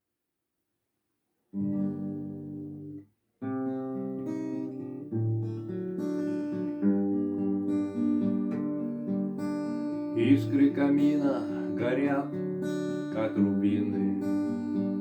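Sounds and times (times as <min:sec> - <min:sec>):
acoustic guitar chords: 0:01.6 - 0:15.0.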